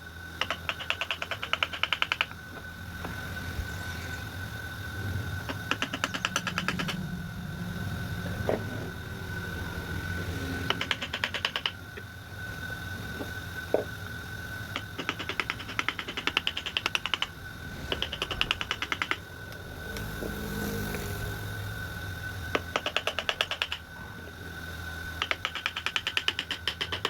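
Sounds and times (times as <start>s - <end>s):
low hum: 0.0s - 27.0s
wood-carving tool tapping: 0.4s - 2.4s, 5.5s - 7.0s, 10.6s - 11.8s, 14.7s - 17.3s, 17.9s - 19.2s, 22.5s - 23.9s, 25.2s - 27.0s.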